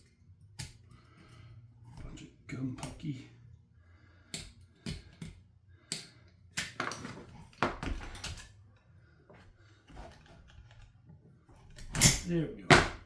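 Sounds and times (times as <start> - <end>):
hand tools clicking on metal: 4.3 - 7.0, 11.7 - 13.0.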